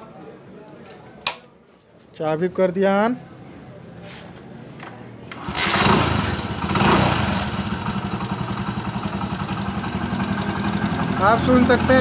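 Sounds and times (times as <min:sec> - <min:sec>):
motorcycle engine starting and idling: 0:05.3 - 0:12.0.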